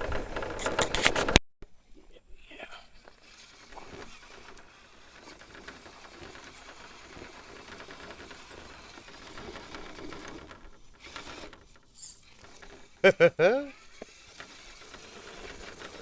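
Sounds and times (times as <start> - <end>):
motor and gears whirring: 3.1 - 13.1, 13.7 - 16.0.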